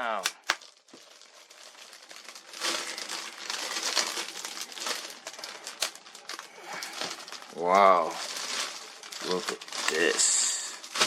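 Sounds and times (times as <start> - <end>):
packaging crinkling and rustling: 0.0 - 11.0
sharp clicks: 0.2 - 0.6.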